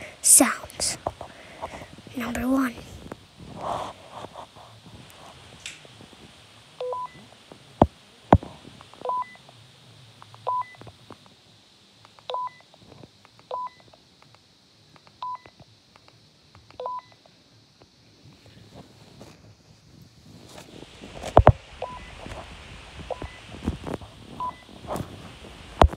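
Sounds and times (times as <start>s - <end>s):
short electronic beeps: 6.8s - 7.2s, 21.8s - 22.1s.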